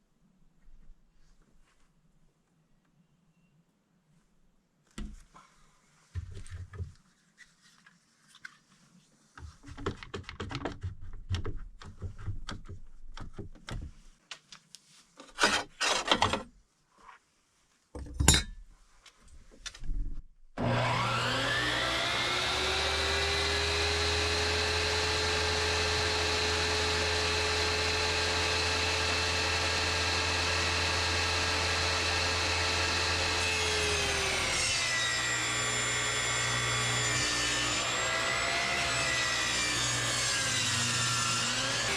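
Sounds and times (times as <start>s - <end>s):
boards knocking and clunking: 6.2s - 7.0s, 9.4s - 14.1s
table saw ripping a board: 15.2s - 16.5s, 20.6s - 41.9s
table saw motor running: 20.6s - 41.9s.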